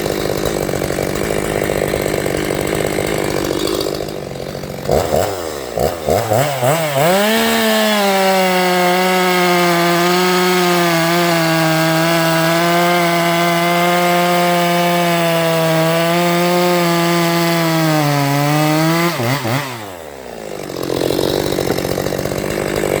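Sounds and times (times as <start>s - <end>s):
chainsaw cutting wood: 0.0s - 23.0s.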